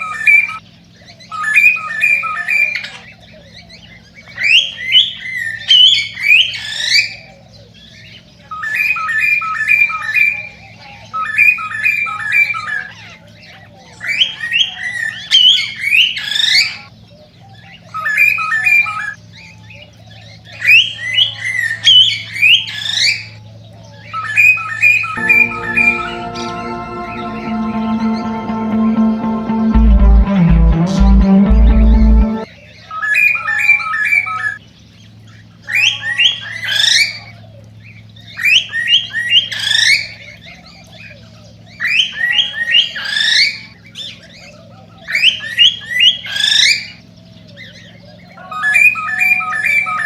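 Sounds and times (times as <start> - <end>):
music: 25.2 - 32.5.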